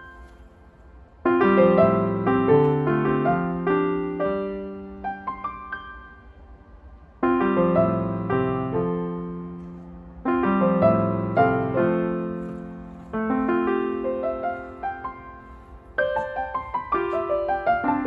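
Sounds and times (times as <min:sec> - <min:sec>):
gentle piano music: 0:00.0 - 0:18.0.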